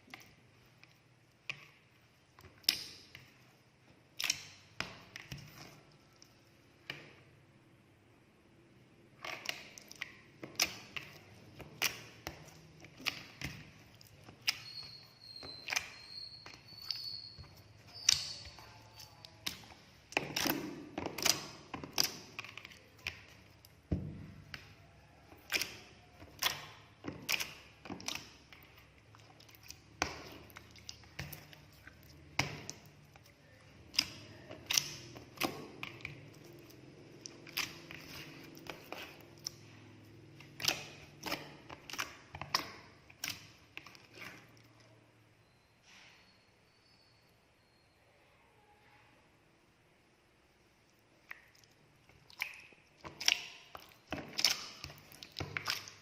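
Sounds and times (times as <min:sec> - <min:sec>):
objects scraping and rustling: 0:27.0 - 0:45.0.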